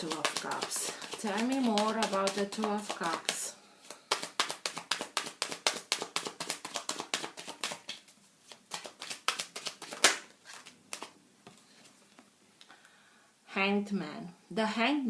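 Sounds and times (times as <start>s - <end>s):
cards being shuffled: 0.0s - 12.2s
card slap: 8.7s - 10.3s.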